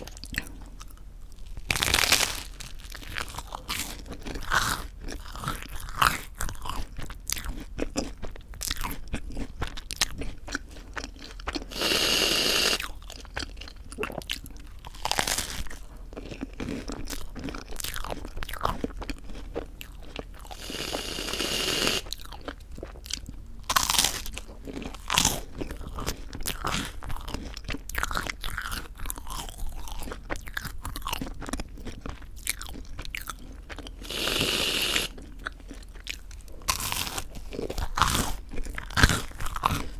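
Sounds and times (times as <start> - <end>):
chewing crisp toast: 0.0 - 39.9
whipped cream can hissing: 11.8 - 12.8, 20.6 - 22.1, 34.0 - 35.1.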